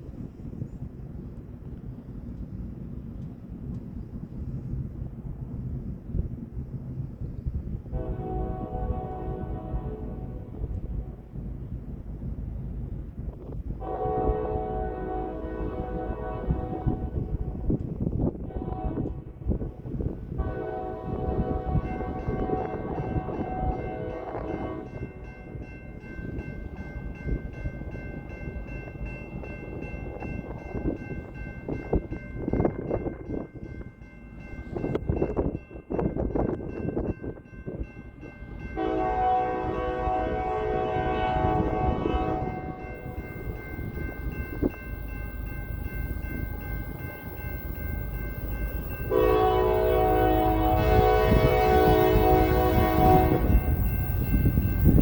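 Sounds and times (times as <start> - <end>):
freight train rumbling on rails: 0.0 - 55.0
locomotive horn: 7.9 - 11.1, 13.8 - 17.6, 18.4 - 19.6, 20.3 - 25.0, 38.8 - 43.5, 49.0 - 55.0
crossing bell ringing: 20.6 - 55.0
steady high ringing tone: 42.4 - 55.0.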